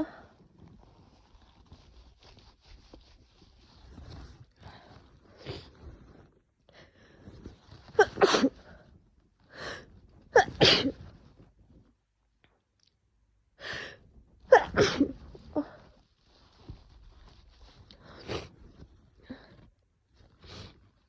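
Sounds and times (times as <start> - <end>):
woman sneezing: 14.5 - 15.2.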